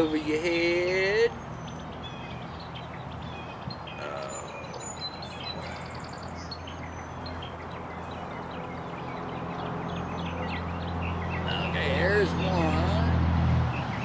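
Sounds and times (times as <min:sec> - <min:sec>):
birds chirping: 0:00.0 - 0:14.0.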